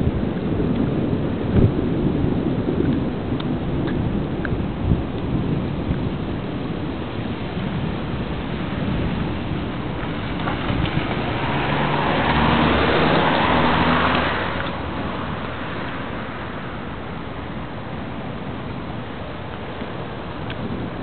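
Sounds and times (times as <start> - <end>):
steady rain: 0.0 - 21.0
car tyres hissing on wet road: 5.3 - 21.0
low engine hum: 7.4 - 21.0.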